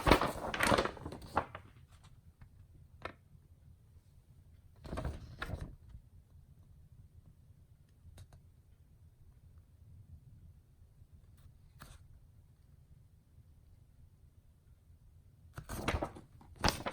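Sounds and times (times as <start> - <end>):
typewriter clatter: 0.0 - 1.6, 15.7 - 16.9.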